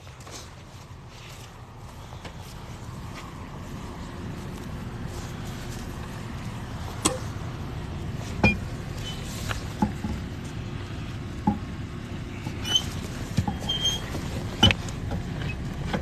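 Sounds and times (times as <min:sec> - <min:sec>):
street traffic rumble: 0:00.0 - 0:16.0
sharp clicks and knocks: 0:07.0 - 0:07.4, 0:09.4 - 0:10.6.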